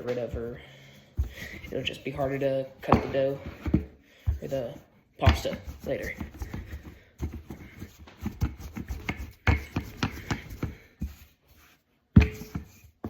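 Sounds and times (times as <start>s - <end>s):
rolling pin knocking on dough: 2.8s - 11.2s, 12.2s - 13.0s.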